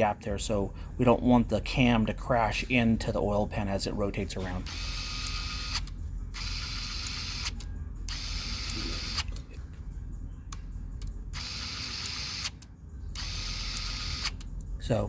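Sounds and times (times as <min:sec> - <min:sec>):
motorcycle stand mechanism running: 0:04.7 - 0:09.7, 0:10.5 - 0:14.6.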